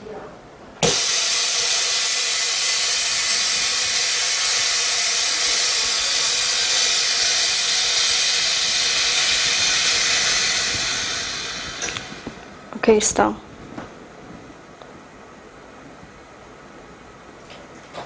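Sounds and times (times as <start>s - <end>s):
compressed air hissing: 0.8s - 12.7s.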